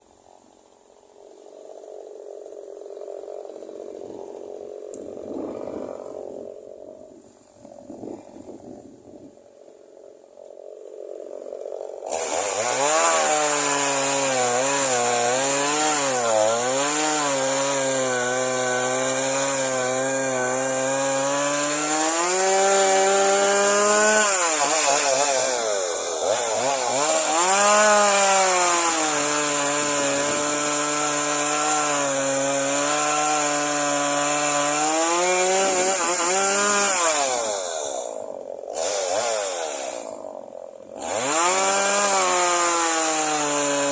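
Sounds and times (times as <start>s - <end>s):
chainsaw revving: 12.0s - 43.9s.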